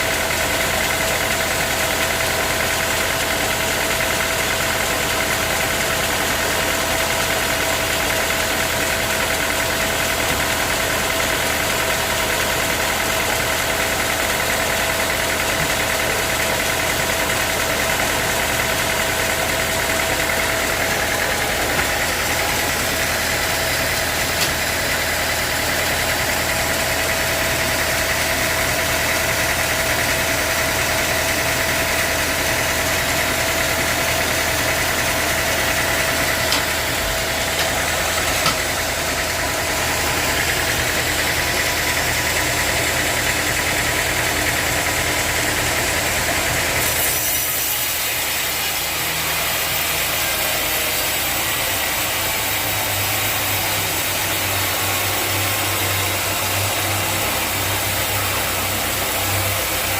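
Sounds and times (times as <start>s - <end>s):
high machine whine: 0.0s - 59.9s
sawmill machinery din: 0.0s - 59.9s.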